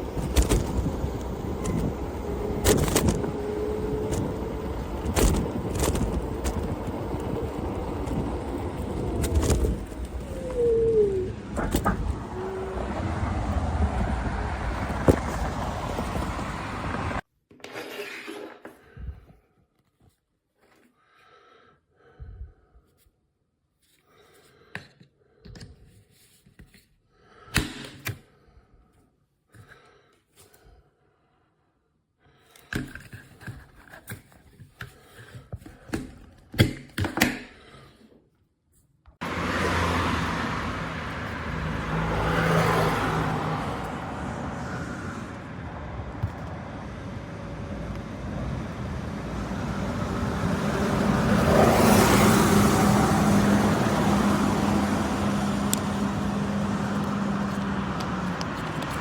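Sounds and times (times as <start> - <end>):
vehicle engine hum: 0.0 - 17.2, 39.2 - 59.0
wind and road noise: 0.0 - 17.2, 39.2 - 59.0.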